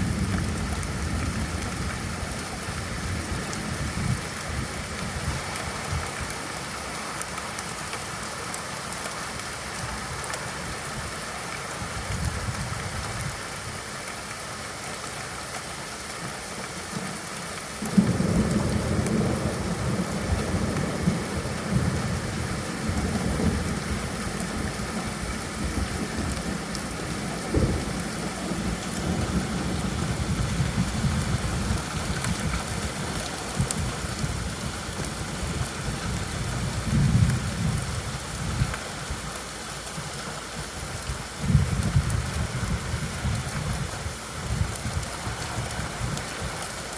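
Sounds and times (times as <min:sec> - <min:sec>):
thunder rumbling and cracking: 0:00.0 - 0:06.1, 0:17.8 - 0:38.8, 0:41.1 - 0:46.6
steady rainfall: 0:00.0 - 0:46.9.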